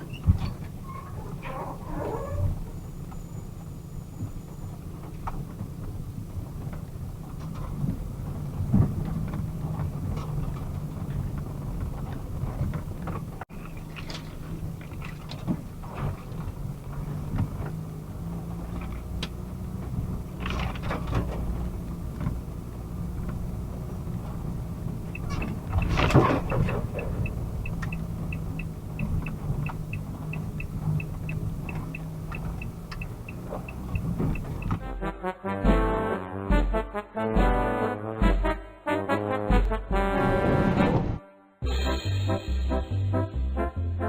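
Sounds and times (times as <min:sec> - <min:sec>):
car engine and tyres rumbling: 0:00.0 - 0:35.0.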